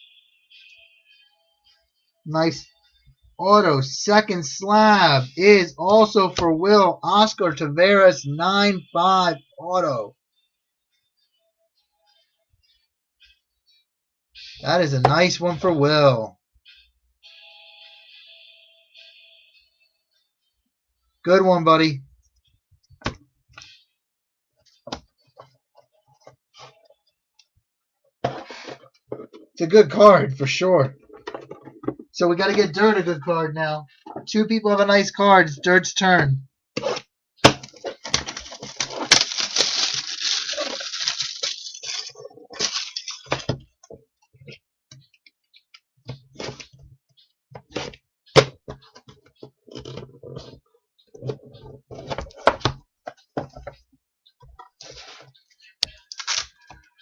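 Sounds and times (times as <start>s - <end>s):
cards being handled: 37.6s - 43.6s, 56.1s - 56.6s
wrapper tearing and crinkling: 38.1s - 43.4s, 56.1s - 56.6s.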